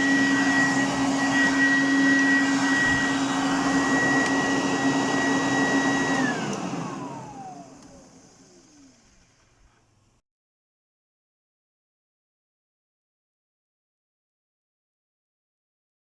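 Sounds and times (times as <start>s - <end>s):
vacuum cleaner motor whine: 0.0s - 10.1s.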